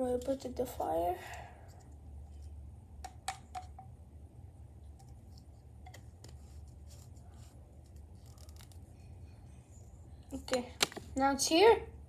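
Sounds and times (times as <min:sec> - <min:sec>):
steady low hum: 0:00.0 - 0:12.0
clicks and taps of small objects: 0:03.0 - 0:03.9, 0:10.4 - 0:11.2.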